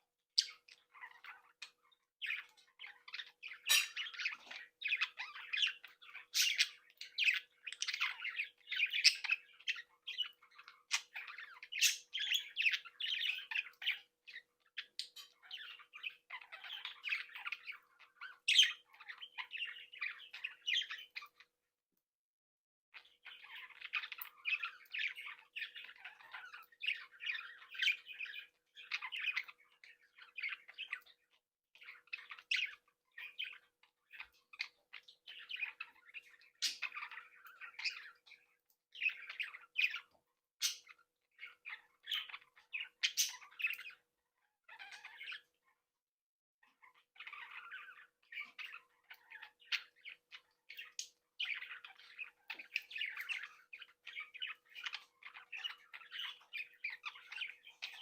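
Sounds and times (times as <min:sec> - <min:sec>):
budgerigars chattering: 0:00.4 - 0:21.4, 0:31.8 - 0:44.0, 0:44.7 - 0:45.5, 0:46.7 - 0:58.0.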